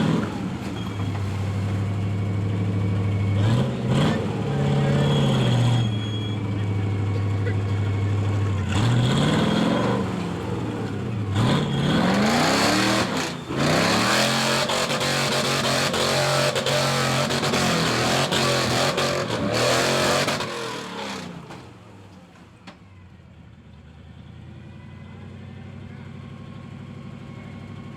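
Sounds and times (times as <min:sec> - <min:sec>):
truck engine revving: 0:00.0 - 0:22.1.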